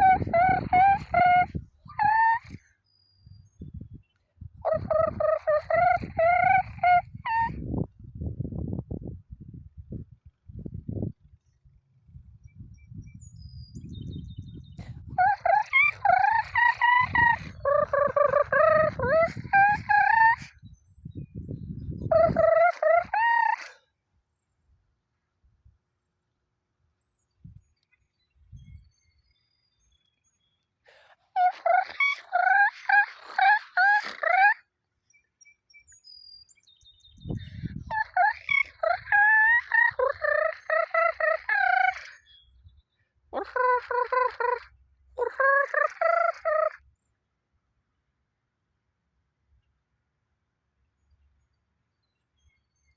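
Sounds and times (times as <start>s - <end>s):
fowl chirping: 0.0s - 2.6s, 4.7s - 7.5s, 15.2s - 20.5s, 22.1s - 23.7s, 31.4s - 34.6s, 37.9s - 42.1s
fowl loud repeated calls: 31.4s - 34.6s.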